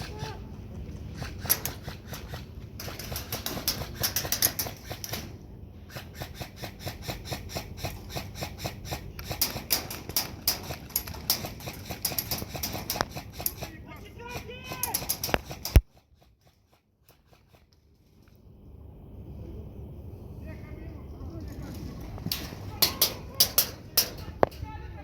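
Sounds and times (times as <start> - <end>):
airsoft guns firing: 1.1 - 5.3, 5.9 - 16.0.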